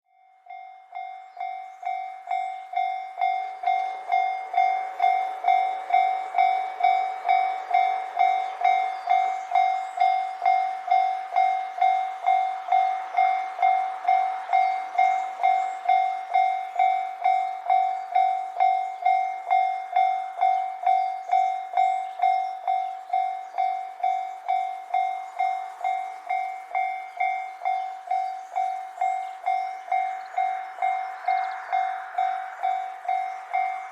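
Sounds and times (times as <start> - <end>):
level-crossing warning bell: 0.1 - 33.9.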